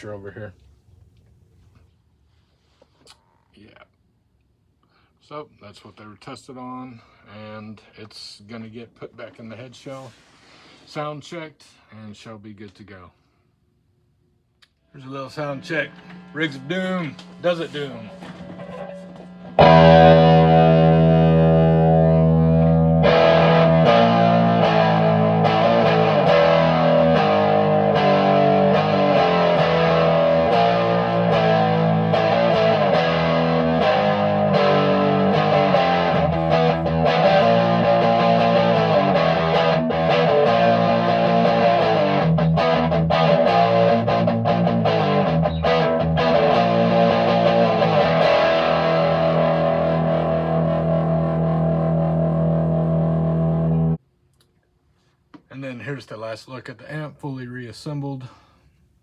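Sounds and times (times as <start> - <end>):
distorted electric guitar: 15.4 - 54.0.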